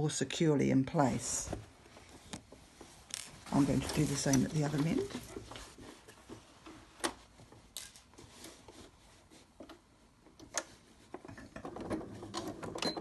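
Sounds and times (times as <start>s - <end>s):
fabric rustling: 1.0s - 9.6s.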